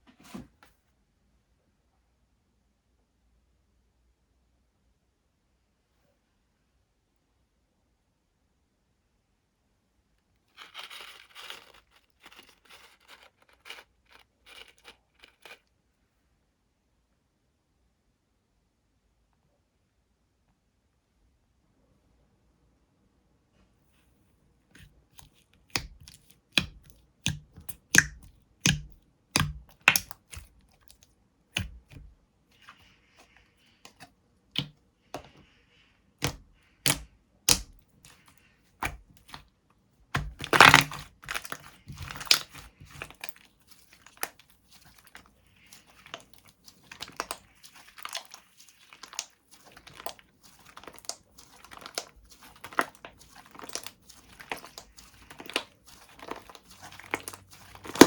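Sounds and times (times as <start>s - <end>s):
slime squishing clicks and pops: 25.8s - 30.5s.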